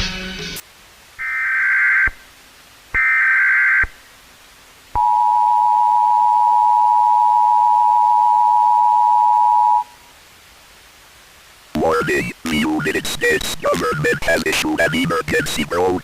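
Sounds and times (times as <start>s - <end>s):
two-tone attention signal: 5.0s - 9.9s
harsh digital data warble: 11.8s - 16.0s.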